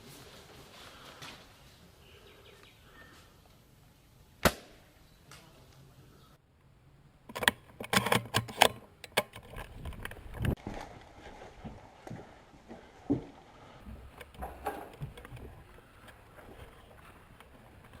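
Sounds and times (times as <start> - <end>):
airsoft rifle shot: 4.4 - 4.8.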